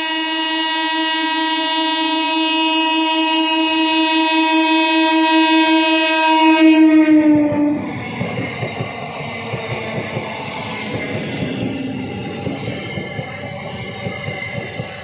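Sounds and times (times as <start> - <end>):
train horn: 0.0 - 8.5
train wheels rumbling and clattering: 3.6 - 15.0.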